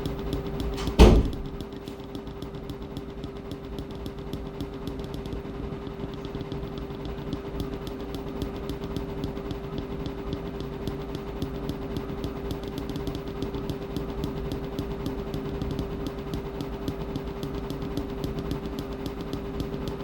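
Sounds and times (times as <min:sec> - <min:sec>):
washing machine motor hum: 0:00.0 - 0:20.0
loud thump: 0:00.8 - 0:01.6
faint ticking: 0:01.4 - 0:20.0.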